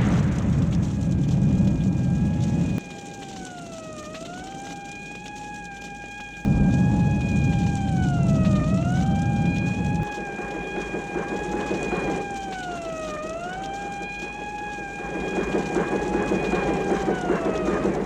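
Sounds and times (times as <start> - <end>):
heavy low rumble: 0.0 - 2.8, 6.5 - 10.5
alarm siren steady tone: 0.0 - 18.0
crackling patter: 0.0 - 18.0.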